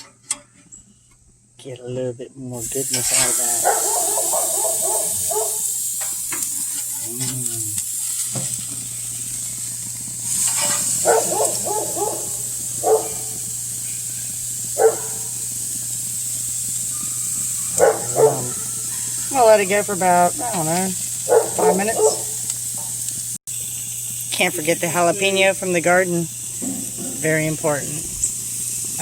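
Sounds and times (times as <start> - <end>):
chicken sizzling on grill: 2.5 - 29.0
dog barking and yelping: 3.6 - 5.7, 11.0 - 13.4, 14.8 - 15.3, 17.0 - 19.4, 21.2 - 22.4.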